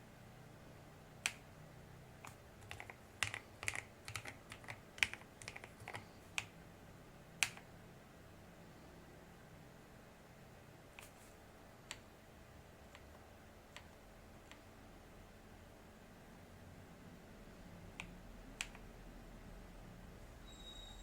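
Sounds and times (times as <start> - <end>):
mechanical keyboard typing: 2.2 - 6.6, 7.4 - 7.7.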